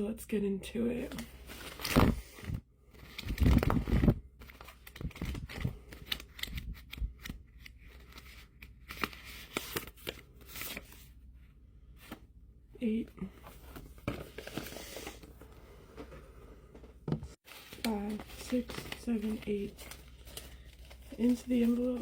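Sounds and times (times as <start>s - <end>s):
paper rustling and crinkling: 1.1s - 11.1s, 13.4s - 15.4s, 17.4s - 22.0s.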